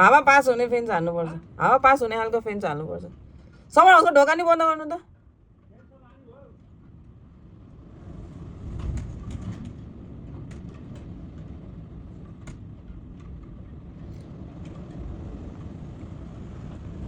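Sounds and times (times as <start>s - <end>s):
wind buffeting microphone: 6.7s - 17.0s
light clicks and rattles: 8.7s - 15.0s.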